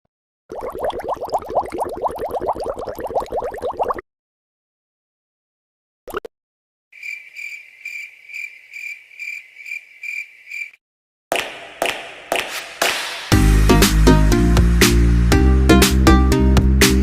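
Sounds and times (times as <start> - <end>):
cricket chirps: 7.0 - 10.8
sharp hits: 11.3 - 13.6
loud music with strong beat: 11.3 - 17.0.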